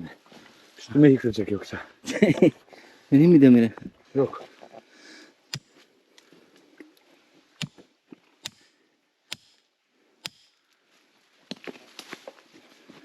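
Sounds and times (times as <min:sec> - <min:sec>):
hand tool striking rock: 0:05.5 - 0:05.7, 0:07.6 - 0:07.8, 0:08.4 - 0:10.6.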